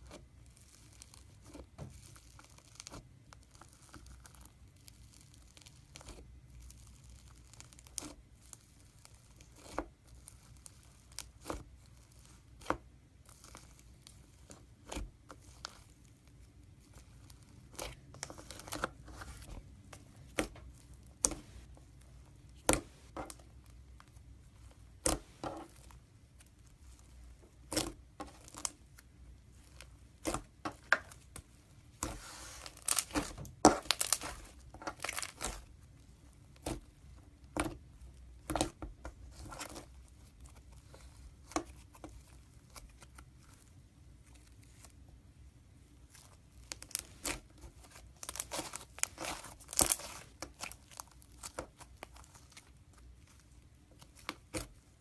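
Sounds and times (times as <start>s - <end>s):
slime popping and crackling: 32.0s - 35.8s, 46.2s - 52.8s.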